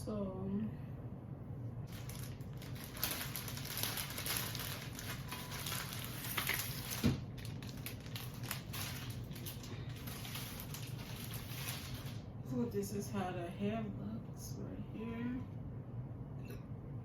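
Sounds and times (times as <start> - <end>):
steady low hum: 0.0 - 17.0
hair crackling and rustling: 1.9 - 12.3.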